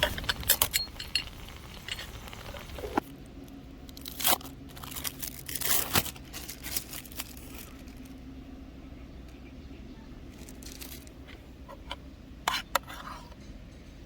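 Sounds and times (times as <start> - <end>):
plastic crinkling and crunching: 3.8 - 8.2, 10.3 - 11.3.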